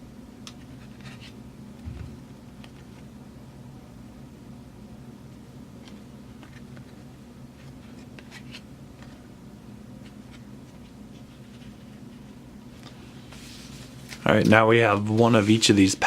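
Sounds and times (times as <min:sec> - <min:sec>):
cards clicking and rustling: 0:05.8 - 0:07.0, 0:07.6 - 0:09.2.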